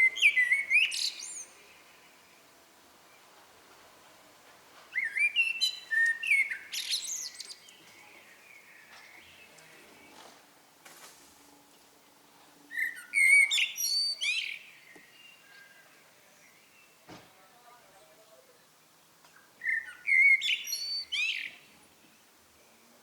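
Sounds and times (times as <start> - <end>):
blackbird singing: 0.0 - 2.5, 4.9 - 10.2, 12.7 - 17.0, 19.3 - 22.8.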